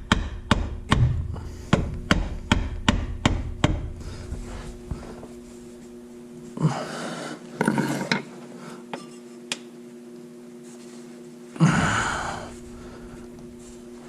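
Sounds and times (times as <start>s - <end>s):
steady low hum: 0.0s - 14.0s
metal tools clanking and scraping: 7.6s - 8.3s.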